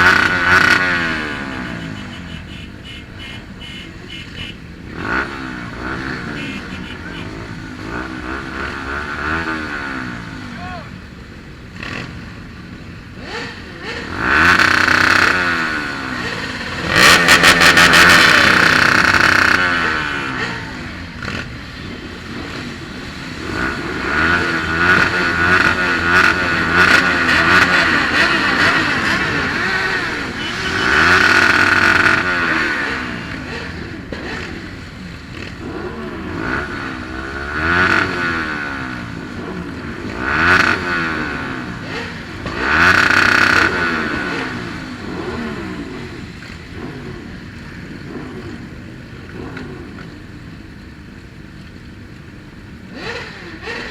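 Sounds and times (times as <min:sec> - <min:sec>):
motorcycle engine revving: 0:00.0 - 0:10.9, 0:11.6 - 0:51.0, 0:52.8 - 0:53.9.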